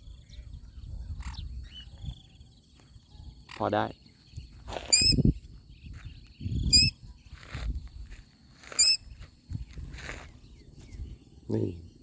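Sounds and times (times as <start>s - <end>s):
faint high insect hum: 0.0s - 12.0s
cockatiel chirping: 8.7s - 9.0s.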